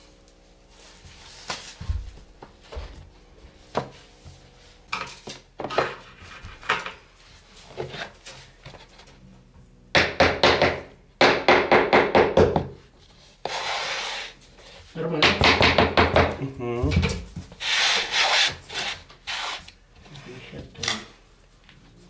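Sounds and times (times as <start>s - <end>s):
boards knocking on wooden floor: 15.2s - 17.4s.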